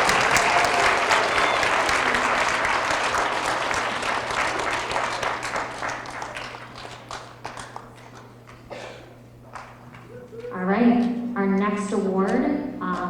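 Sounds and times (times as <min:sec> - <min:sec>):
children applauding: 0:00.0 - 0:08.6.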